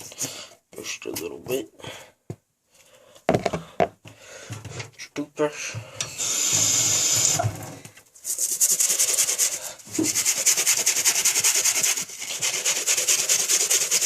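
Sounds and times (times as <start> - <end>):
toothbrush scrubbing rubber sole: 8.2 - 14.0.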